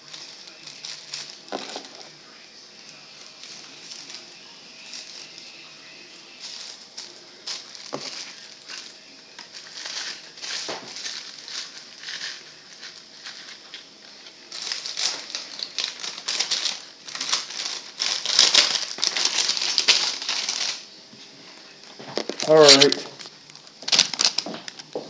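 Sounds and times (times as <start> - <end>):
small objects clicking and clattering: 0.0 - 2.1, 6.4 - 13.9, 14.5 - 20.9, 22.1 - 25.0.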